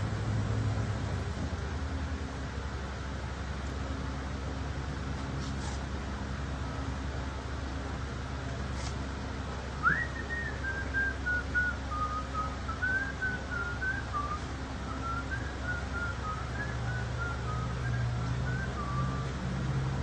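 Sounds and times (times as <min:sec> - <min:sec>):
steady low hum: 0:00.0 - 0:05.0, 0:06.0 - 0:20.0
person whistling a tune: 0:09.8 - 0:19.4.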